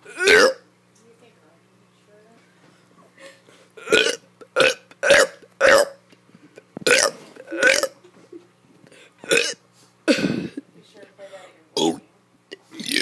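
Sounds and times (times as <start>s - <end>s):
child burping: 0.0s - 0.6s, 3.8s - 5.9s, 6.8s - 8.0s, 9.2s - 10.6s, 12.7s - 13.0s.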